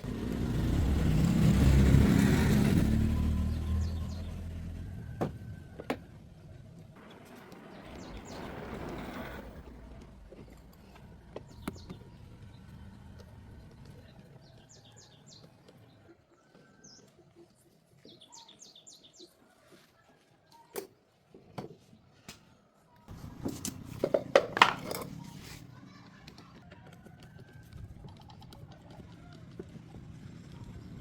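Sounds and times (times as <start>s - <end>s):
handling noise clatter: 23.2s - 25.6s.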